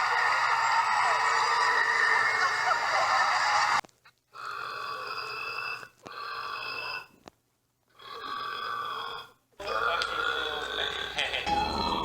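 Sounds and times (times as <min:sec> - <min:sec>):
man belching: 0:08.0 - 0:12.0.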